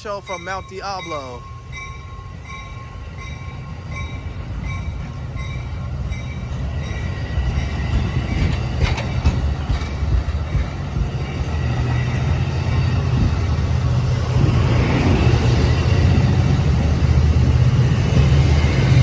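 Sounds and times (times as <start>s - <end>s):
bell ringing: 0.0s - 7.2s
train rumbling: 0.0s - 19.0s.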